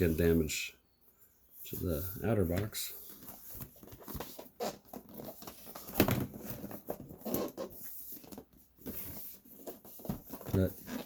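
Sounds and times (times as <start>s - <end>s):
cardboard scraping and rustling: 2.5s - 11.0s.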